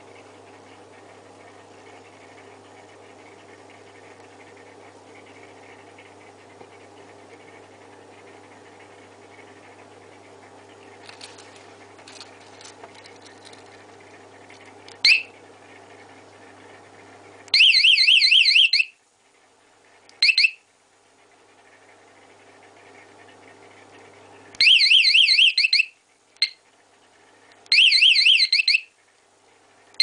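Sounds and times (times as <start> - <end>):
alarm chirp: 15.0 - 15.3, 20.2 - 20.6, 24.6 - 26.6, 27.7 - 28.9
warbling alarm siren: 17.5 - 18.9, 24.6 - 25.9, 27.7 - 28.9.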